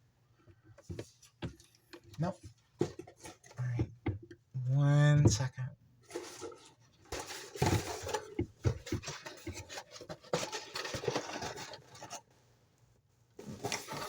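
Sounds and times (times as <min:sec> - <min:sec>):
paper and packaging rustling: 0:00.8 - 0:03.8, 0:06.0 - 0:12.3, 0:13.4 - 0:14.0.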